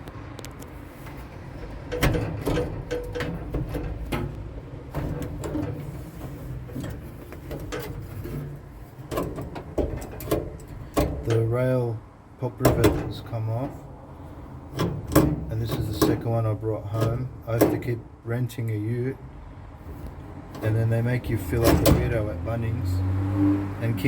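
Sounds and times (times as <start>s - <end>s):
metal clacks and rattles: 0.6s - 11.5s, 14.7s - 18.0s, 21.4s - 22.3s
steel drawers sliding on runners: 0.7s - 11.5s, 12.6s - 17.9s, 19.8s - 22.3s.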